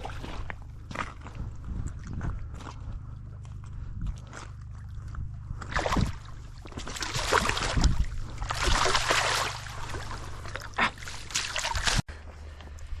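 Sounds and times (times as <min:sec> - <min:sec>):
river water splashing: 0:00.0 - 0:01.4, 0:04.3 - 0:12.0.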